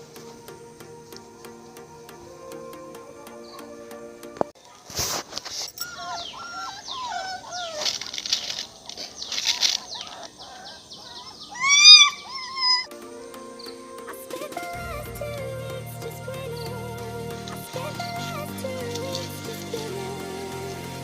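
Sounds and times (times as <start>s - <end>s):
puppies whimpering and squealing: 5.8s - 8.2s, 9.8s - 12.9s.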